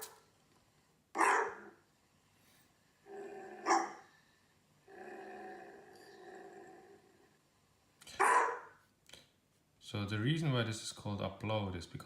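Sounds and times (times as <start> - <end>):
dog barking: 1.2 - 1.8, 3.6 - 4.0, 8.1 - 8.8.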